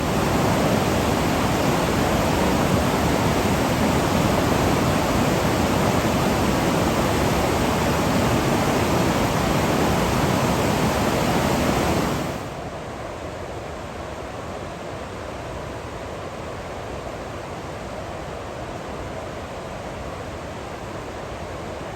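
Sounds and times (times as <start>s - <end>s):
waterfall rushing: 0.0s - 12.6s.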